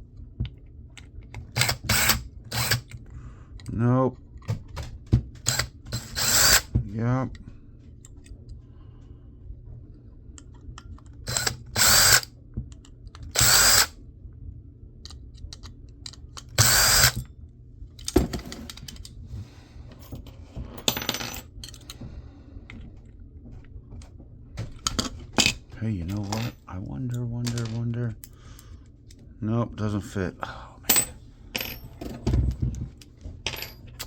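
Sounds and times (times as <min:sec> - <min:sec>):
cordless power driver whining: 0:05.5 - 0:06.7, 0:11.3 - 0:12.3, 0:13.3 - 0:13.9, 0:16.5 - 0:17.2.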